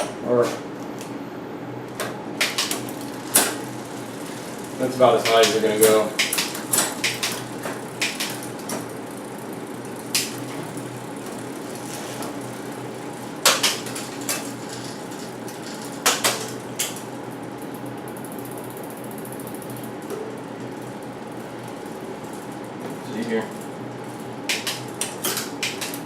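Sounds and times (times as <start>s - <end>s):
bicycle chain turning: 2.4s - 26.0s.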